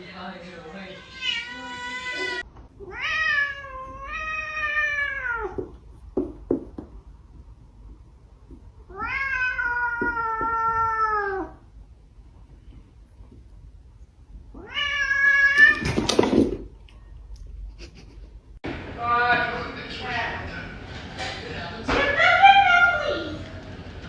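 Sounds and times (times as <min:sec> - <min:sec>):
cat meowing: 0:00.8 - 0:05.7, 0:08.9 - 0:11.6, 0:14.5 - 0:15.9.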